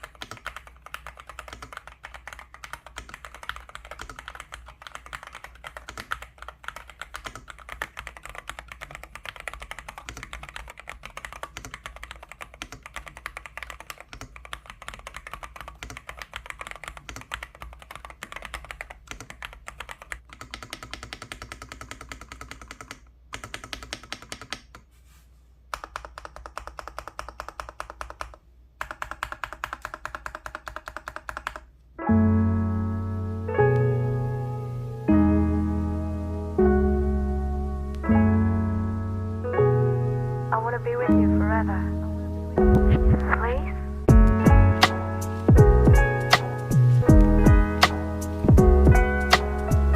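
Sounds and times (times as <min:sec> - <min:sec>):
mechanical keyboard typing: 0:00.0 - 0:24.8, 0:25.7 - 0:31.7
soft background music: 0:32.0 - 0:49.9.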